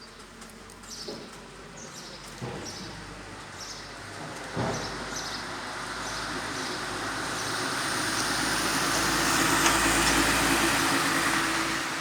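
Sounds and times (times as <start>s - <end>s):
vehicle approaching: 5.5s - 12.0s.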